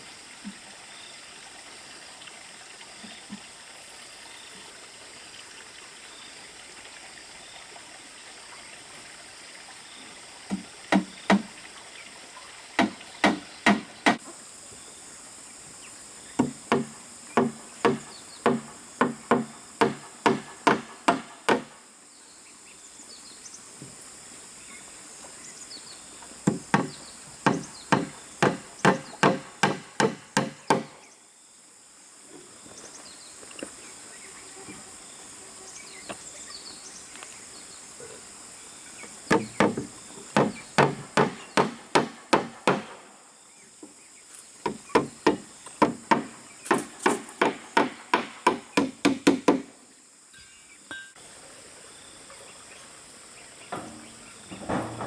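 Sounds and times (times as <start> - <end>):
tool striking wood: 10.5 - 11.5, 12.8 - 14.2, 16.4 - 21.8, 26.4 - 31.0, 39.3 - 43.1, 44.6 - 49.7.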